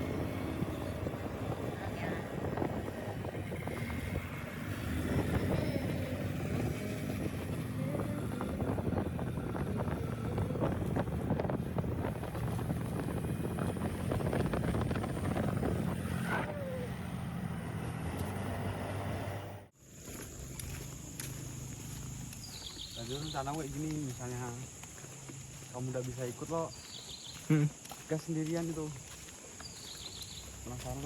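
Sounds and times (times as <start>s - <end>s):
vehicle engine running: 0.0s - 24.6s.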